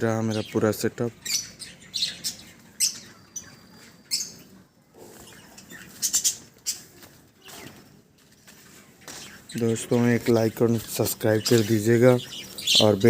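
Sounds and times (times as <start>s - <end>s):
budgerigars chirping: 0.3s - 4.5s, 5.3s - 6.9s, 9.0s - 13.0s.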